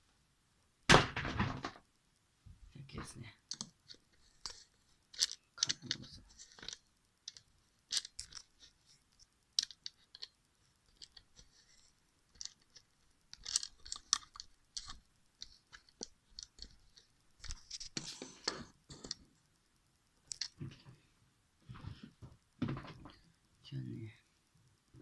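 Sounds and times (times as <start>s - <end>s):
handling clicks and rustles: 3.4s - 19.4s, 20.3s - 20.9s.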